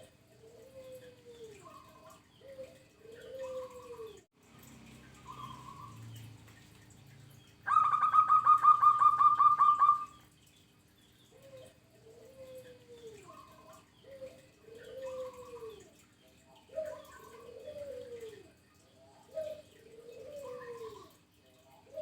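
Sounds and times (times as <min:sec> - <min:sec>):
dove cooing: 0:00.0 - 0:04.2, 0:07.7 - 0:10.2, 0:11.3 - 0:22.0.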